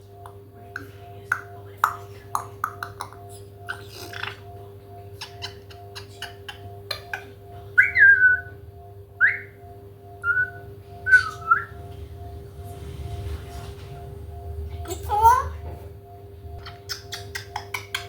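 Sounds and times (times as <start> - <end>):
faint steady hum: 0.0 - 18.0
parrot whistling: 5.2 - 8.6, 9.2 - 9.6, 10.2 - 11.8, 16.6 - 18.0.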